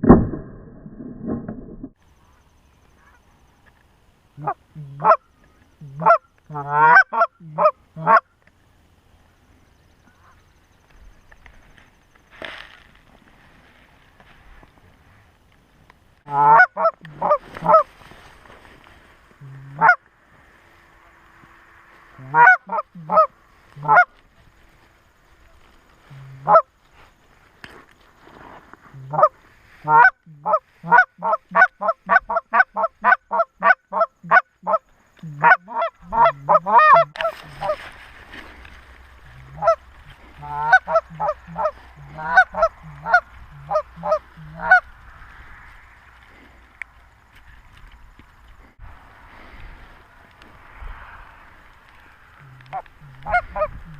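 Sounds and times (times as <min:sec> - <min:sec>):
goose honks and clucks: 0:04.4 - 0:05.2, 0:05.8 - 0:08.3, 0:16.3 - 0:17.9, 0:19.4 - 0:20.0, 0:22.1 - 0:24.1, 0:26.1 - 0:26.7, 0:29.0 - 0:37.9, 0:39.3 - 0:44.9, 0:52.4 - 0:53.9.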